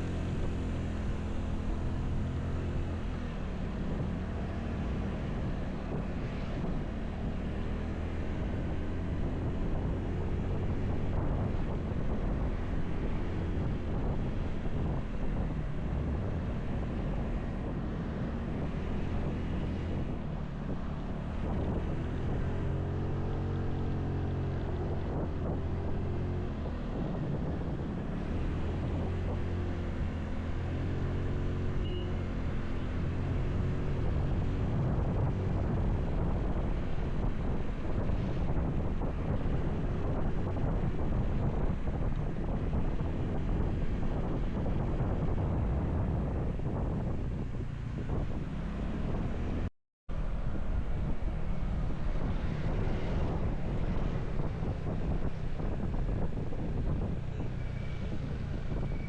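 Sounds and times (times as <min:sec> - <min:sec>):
wind buffeting microphone: 0:04.9 - 0:59.0.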